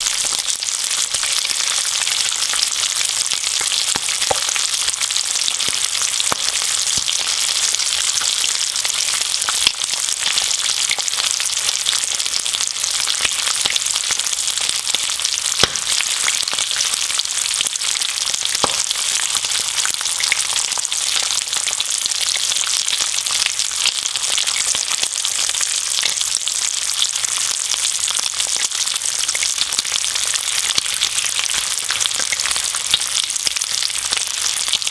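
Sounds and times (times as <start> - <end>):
bacon and eggs sizzling in a pan: 0.0 - 34.9
fat popping and crackling: 3.8 - 4.7, 15.5 - 16.5, 18.6 - 19.0.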